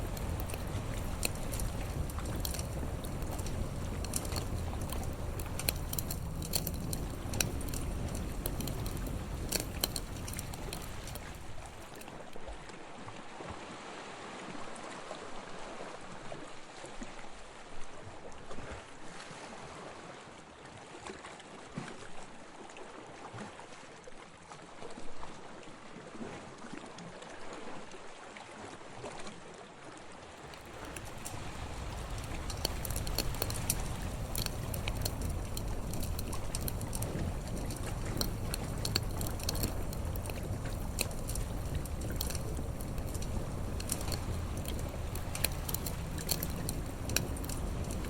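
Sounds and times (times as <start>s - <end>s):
low rumble: 0.0s - 11.8s, 30.5s - 48.0s
water washing: 0.0s - 12.0s, 30.4s - 48.0s
campfire crackling and popping: 0.0s - 12.2s, 30.4s - 48.0s.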